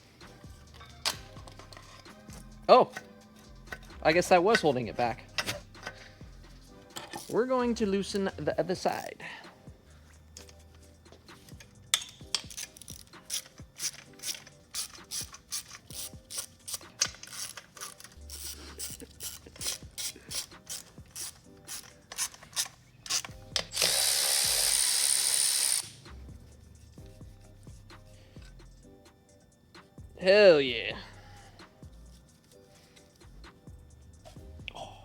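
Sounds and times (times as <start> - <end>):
hand ratchet clicking: 0.7 - 6.2, 6.9 - 9.1, 11.4 - 26.2.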